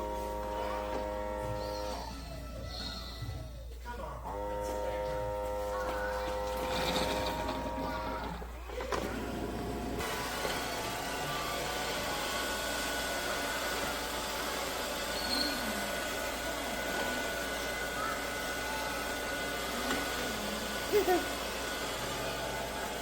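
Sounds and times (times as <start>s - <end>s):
robot vacuum whirring: 6.1s - 23.0s.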